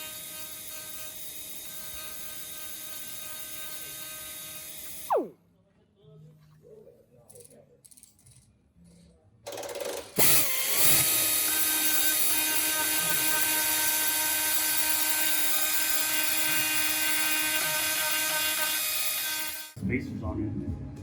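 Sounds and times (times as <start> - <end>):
power tool motor whining: 0.0 - 5.3, 10.2 - 19.8.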